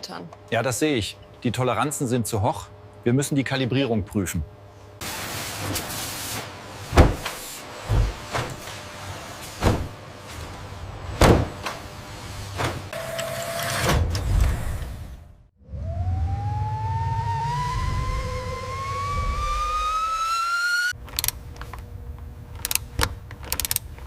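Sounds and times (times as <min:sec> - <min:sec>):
steady machine whine: 0:15.6 - 0:22.8.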